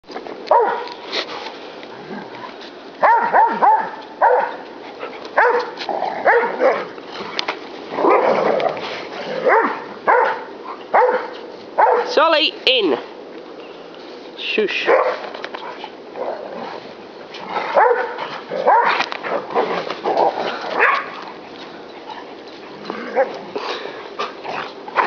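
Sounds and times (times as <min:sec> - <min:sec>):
dog barking excitedly: 0:00.5 - 0:00.9, 0:03.0 - 0:04.6, 0:05.3 - 0:06.9, 0:09.4 - 0:12.2, 0:14.8 - 0:15.3, 0:17.7 - 0:19.1, 0:20.6 - 0:21.2.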